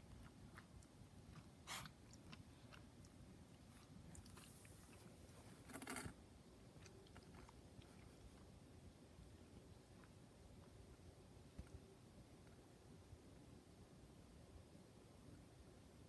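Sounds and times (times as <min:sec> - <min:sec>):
rabbit sneezing: 0:01.6 - 0:02.0.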